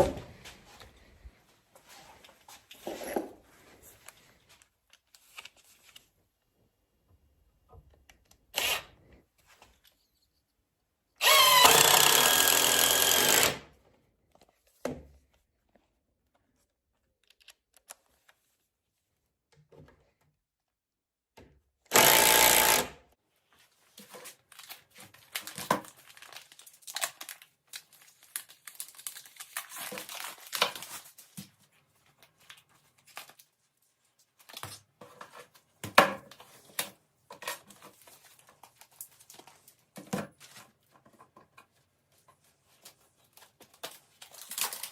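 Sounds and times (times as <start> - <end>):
power drill running: 8.6 - 8.9, 11.2 - 13.6, 21.9 - 23.0.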